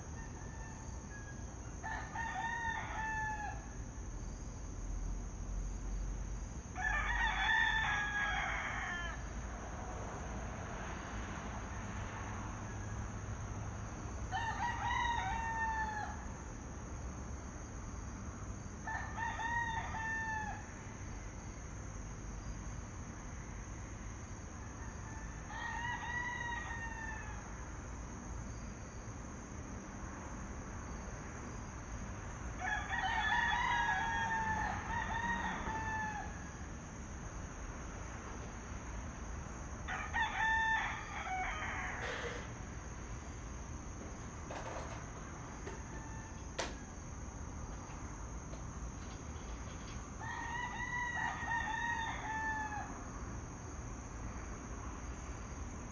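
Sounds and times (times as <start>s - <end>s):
roosters crowing: 0.0s - 3.9s, 6.7s - 10.1s, 13.8s - 16.5s, 18.6s - 21.5s, 23.5s - 28.6s, 31.9s - 37.1s, 39.5s - 54.2s.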